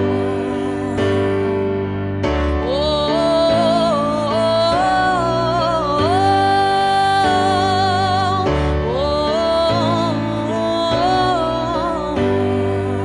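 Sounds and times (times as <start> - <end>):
instrumental worship music: 0.0 - 13.0.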